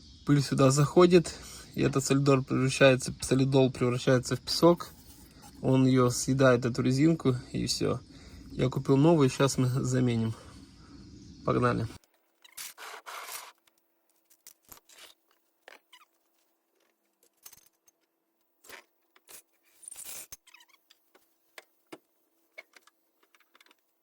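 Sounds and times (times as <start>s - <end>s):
faint steady hum: 0.0s - 14.1s.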